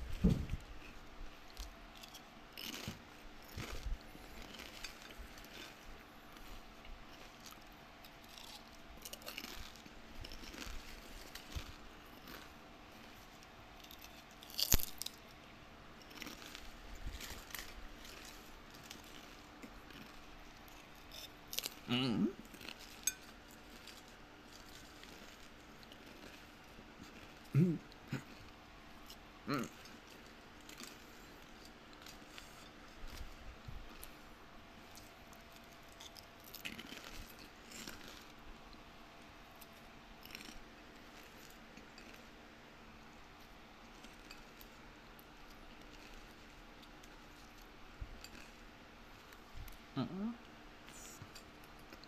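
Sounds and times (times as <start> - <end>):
soft low thumps: 0.0 - 0.7
watermelon being chewed: 0.0 - 52.0.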